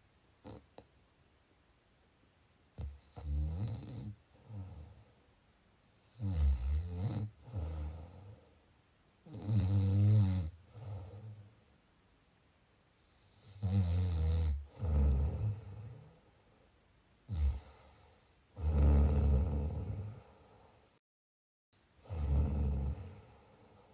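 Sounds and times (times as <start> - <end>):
person snoring: 6.1 - 8.4, 9.3 - 11.4, 13.2 - 16.2, 17.3 - 20.4, 22.0 - 23.9
soft breath: 17.5 - 18.5, 20.1 - 21.0.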